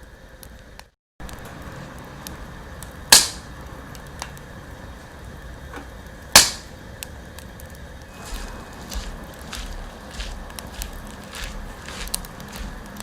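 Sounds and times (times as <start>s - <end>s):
wood fire crackling: 0.4s - 13.0s
loud sharp cracks: 3.1s - 3.5s, 6.3s - 6.7s.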